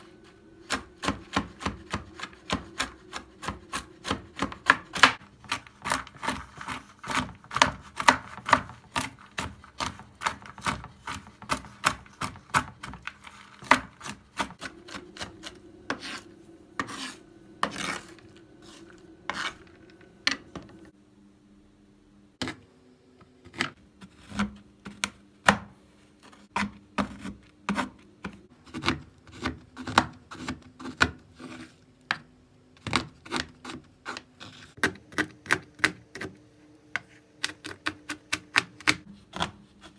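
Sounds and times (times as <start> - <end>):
utensil scraping cookware: 0.0 - 20.9
faint steady hum: 0.0 - 28.6.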